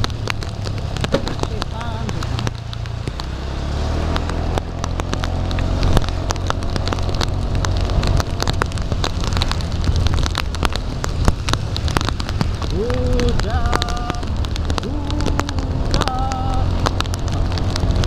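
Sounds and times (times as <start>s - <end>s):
heavy rain: 0.0s - 18.0s
low engine hum: 0.0s - 18.0s
raindrops tapping on plastic bag: 0.0s - 18.0s.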